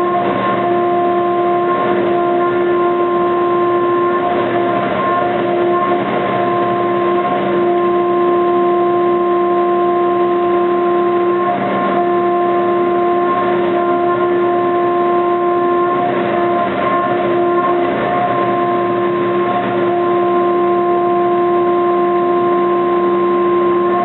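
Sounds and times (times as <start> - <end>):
milling machine cutter whining: 0.0 - 24.0
rush of cutting noise: 0.0 - 24.0.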